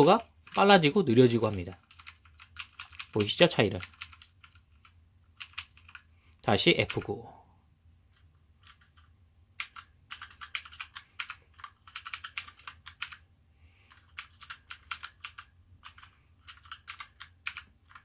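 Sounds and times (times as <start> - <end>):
mechanical keyboard clicking: 0.0 - 6.1, 8.1 - 13.2, 13.9 - 18.0.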